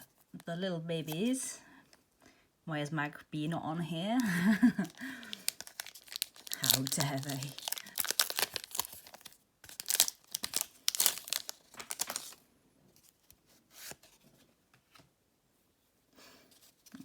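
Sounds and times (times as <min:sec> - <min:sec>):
foil wrapper tearing and crinkling: 0:04.6 - 0:12.4
faint rustle of handling: 0:10.5 - 0:17.0.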